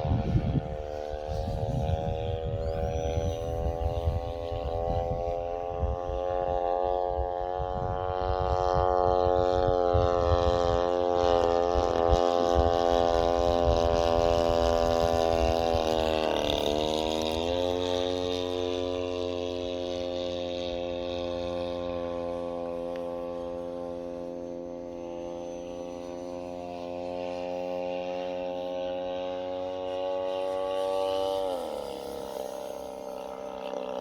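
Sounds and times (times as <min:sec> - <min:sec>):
wind buffeting microphone: 0:00.0 - 0:24.3
model plane engine in flight: 0:00.0 - 0:34.0.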